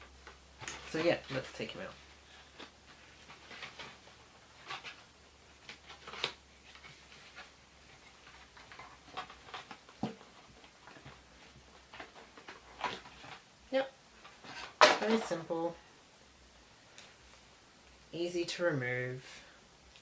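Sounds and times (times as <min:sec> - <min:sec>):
packaging rustling and clicking: 0:02.3 - 0:13.5.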